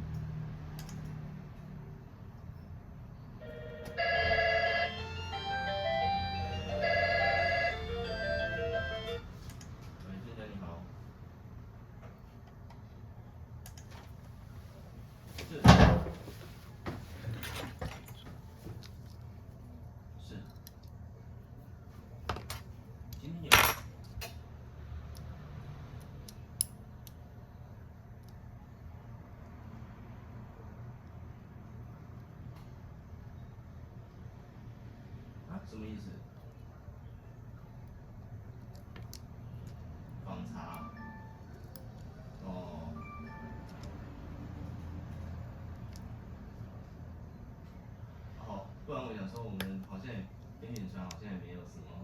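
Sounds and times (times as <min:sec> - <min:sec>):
phone ringtone melody: 0:03.4 - 0:09.4, 0:40.8 - 0:41.5, 0:42.9 - 0:44.1
chiming tones: 0:03.7 - 0:09.3, 0:42.9 - 0:43.8.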